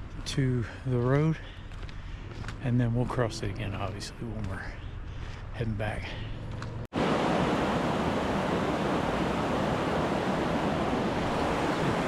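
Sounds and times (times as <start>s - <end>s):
steady rushing noise: 7.0s - 12.0s.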